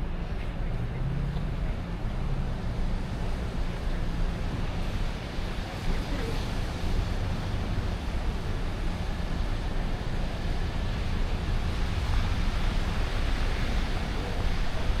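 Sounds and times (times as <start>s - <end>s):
distant traffic rumble: 0.0s - 15.0s.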